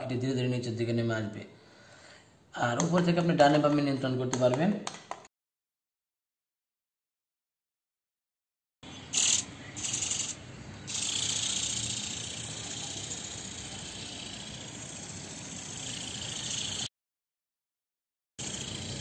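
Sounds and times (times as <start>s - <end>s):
toy electric motor and flapping wings: 9.1s - 16.9s, 18.4s - 19.0s.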